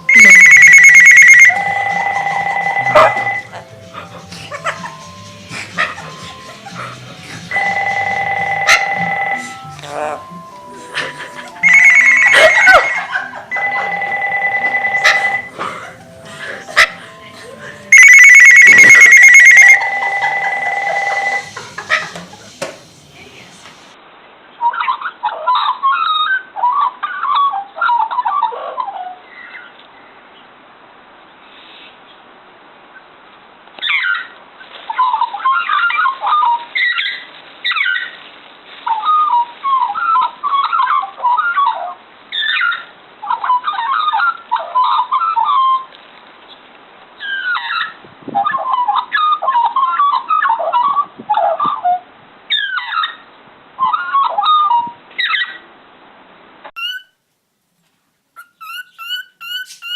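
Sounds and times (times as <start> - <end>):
cockatiel warbling and whistling: 0.1 - 1.5, 11.6 - 13.2, 56.8 - 57.2, 58.4 - 59.9.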